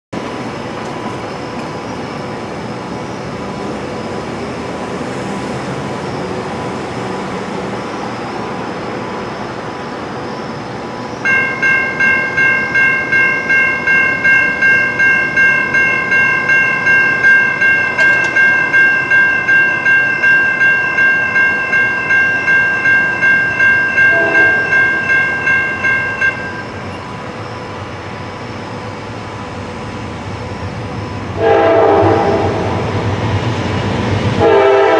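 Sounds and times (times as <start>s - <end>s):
steady background noise: 0.2s - 34.6s
railroad bell ringing: 11.2s - 28.7s.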